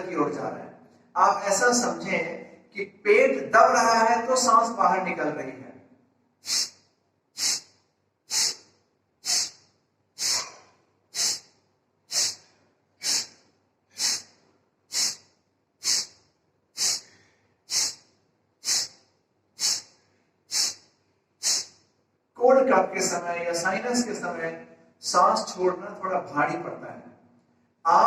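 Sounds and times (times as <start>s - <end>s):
forceful nasal exhalations: 6.4s - 21.9s.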